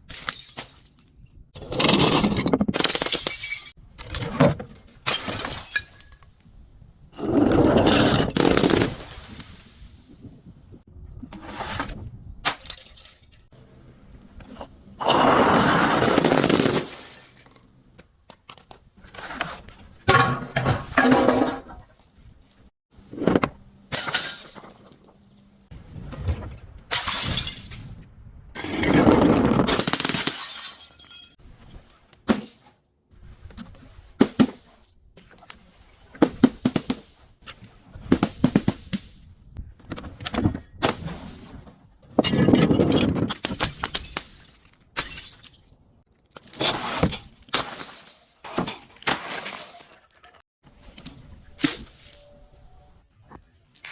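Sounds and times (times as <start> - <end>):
glass bottles crushing and breaking: 0.0 - 1.2, 1.8 - 3.8, 4.9 - 6.4, 7.2 - 9.7, 12.5 - 13.5, 16.1 - 17.7, 26.9 - 28.0, 28.7 - 31.4, 42.2 - 45.8, 46.4 - 50.4
glass cracks and clinks: 2.8 - 3.8, 5.0 - 6.4, 29.9 - 31.4, 47.6 - 50.4.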